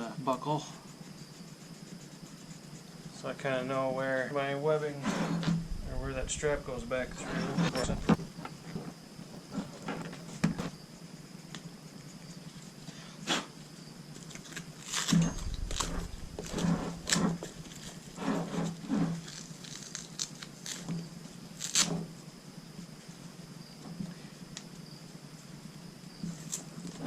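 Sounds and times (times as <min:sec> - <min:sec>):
strap webbing rustling: 0:05.8 - 0:10.8.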